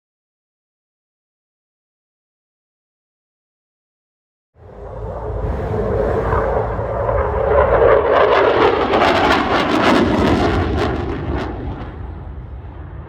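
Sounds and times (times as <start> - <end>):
jet aircraft low pass: 4.6 - 13.0.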